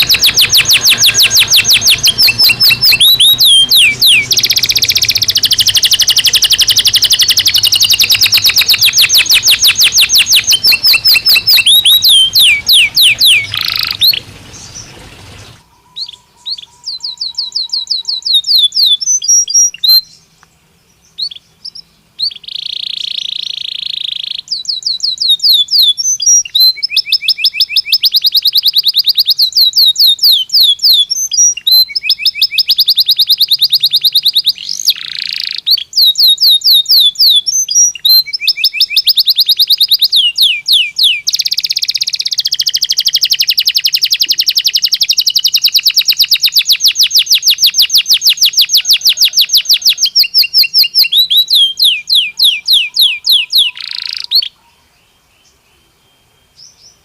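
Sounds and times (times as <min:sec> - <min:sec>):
harsh buzzy bird phrase: 0:00.0 - 0:16.2
canary singing trills: 0:00.0 - 0:57.0.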